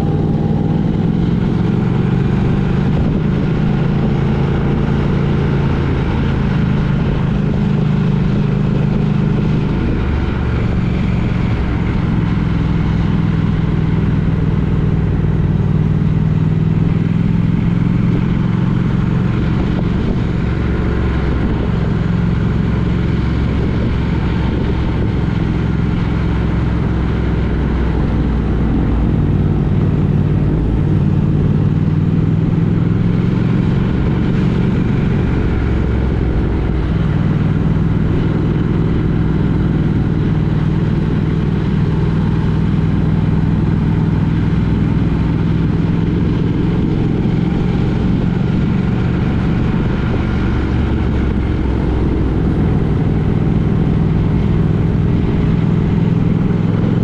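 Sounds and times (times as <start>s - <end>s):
road noise: 0.0s - 57.0s
vehicle engine drone: 0.0s - 57.0s.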